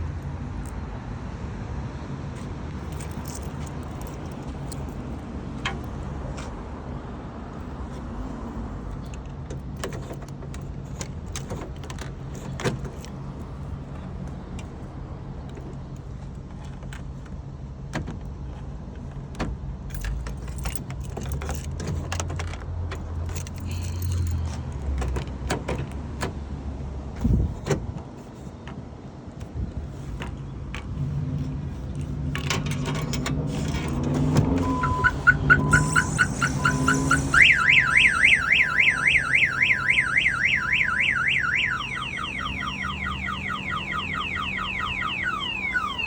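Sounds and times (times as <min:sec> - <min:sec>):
keys jangling: 0:02.7 - 0:06.5, 0:19.9 - 0:25.3
car engine idling: 0:33.6 - 0:46.0.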